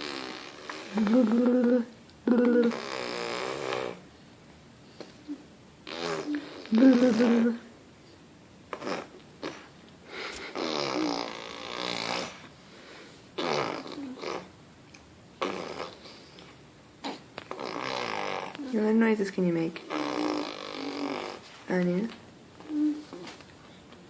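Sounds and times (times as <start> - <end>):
toddler making silly mouth noises: 5.8 - 7.6, 10.5 - 12.4, 13.4 - 14.5, 19.9 - 21.4.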